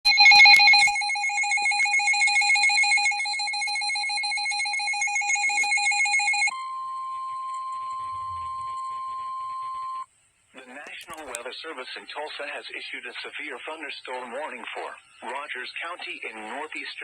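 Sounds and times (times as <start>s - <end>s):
steady single-pitch alarm tone: 0.1s - 10.1s
warbling electronic alert tone: 7.6s - 10.0s.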